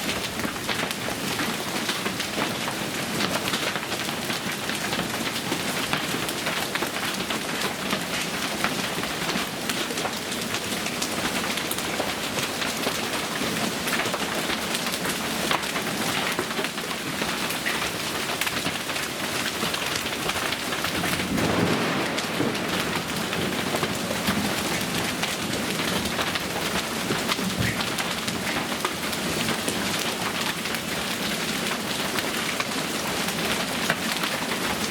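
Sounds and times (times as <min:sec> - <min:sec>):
heavy rain pouring: 0:00.0 - 0:34.9
thunder rumbling: 0:20.8 - 0:28.5.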